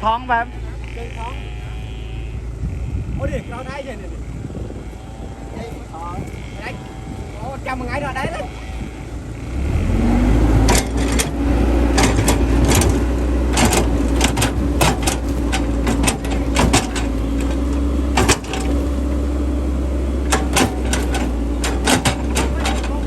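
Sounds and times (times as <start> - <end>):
small electric motor whining: 0.4 - 23.0
clicks and knocks of moving parts: 10.6 - 19.2, 20.2 - 23.0.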